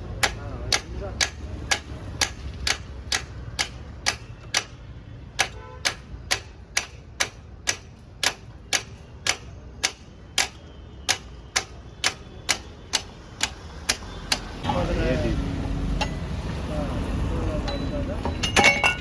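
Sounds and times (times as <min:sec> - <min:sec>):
sharp metallic clicks: 0:00.1 - 0:14.6.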